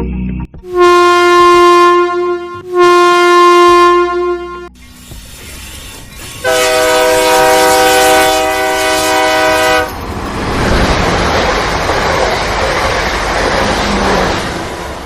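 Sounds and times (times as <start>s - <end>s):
train horn blast: 0.7s - 4.7s, 6.4s - 10.0s
train rumbling on rails: 4.7s - 15.0s.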